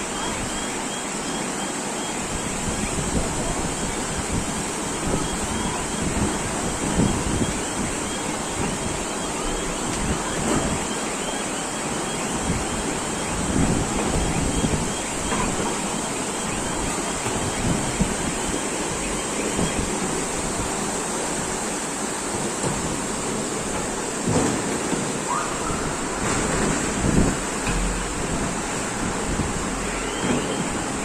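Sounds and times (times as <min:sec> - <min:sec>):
floodwater rushing: 0:00.0 - 0:31.0
wind buffeting microphone: 0:02.3 - 0:10.9, 0:12.2 - 0:21.6, 0:25.3 - 0:31.0.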